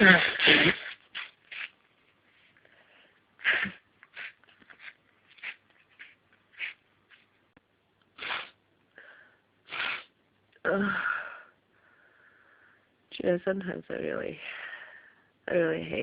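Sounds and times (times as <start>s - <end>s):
woman sniffing sharply: 8.2s - 8.6s, 9.7s - 10.1s.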